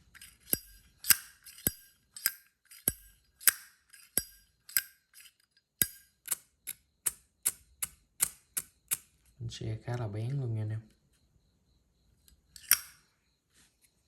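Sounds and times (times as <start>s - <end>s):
lighter lid clicking open and shut: 0.5s - 4.9s, 5.8s - 6.4s, 12.6s - 13.0s.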